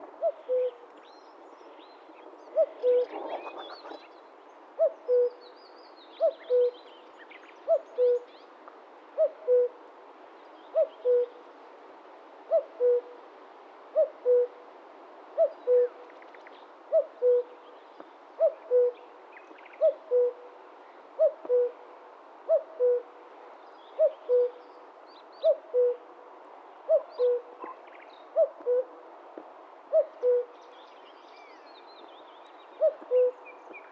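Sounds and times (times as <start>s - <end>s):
cuckoo calling: 32.8s - 33.4s.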